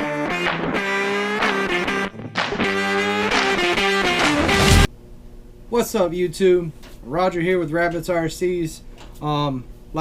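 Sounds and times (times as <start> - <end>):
electric guitar riff: 0.0 - 4.9.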